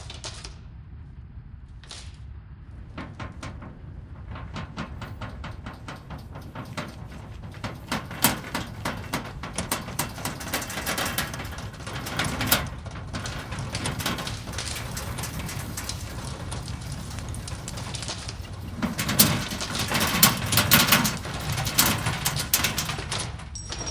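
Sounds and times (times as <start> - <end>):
rattling and cracking clicks: 2.7 - 23.9
deep earthquake rumble: 2.8 - 23.6.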